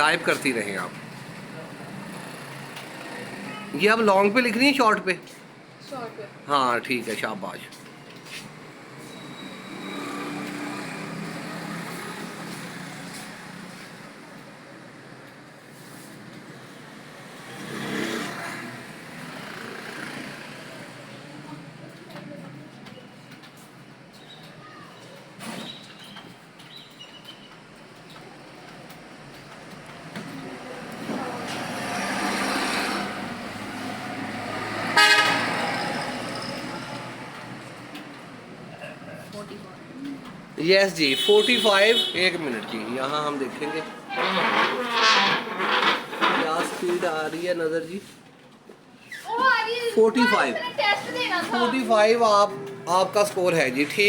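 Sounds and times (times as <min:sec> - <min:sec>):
traffic noise: 0:00.0 - 0:54.0
vehicle engine passing by: 0:17.2 - 0:21.0, 0:30.9 - 0:37.6
vehicle horn toot: 0:35.0 - 0:35.6, 0:41.1 - 0:42.3.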